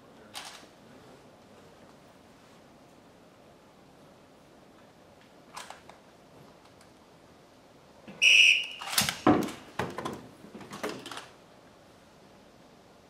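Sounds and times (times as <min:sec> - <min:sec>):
high whistle blast: 0:08.2 - 0:09.0.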